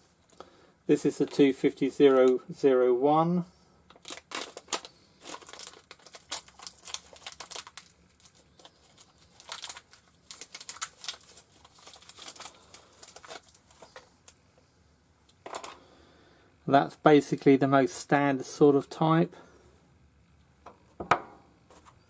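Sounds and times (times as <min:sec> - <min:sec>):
packaging crinkling and rustling: 0:03.9 - 0:14.4.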